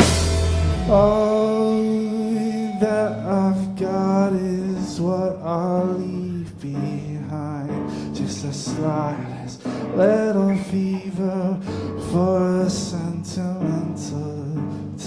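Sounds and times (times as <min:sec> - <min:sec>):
live band instrumental music: 0:00.0 - 0:04.2.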